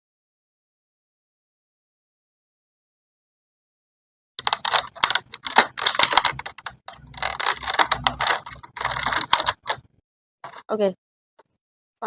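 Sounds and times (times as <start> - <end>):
plastic packaging crackling: 4.4 - 9.9.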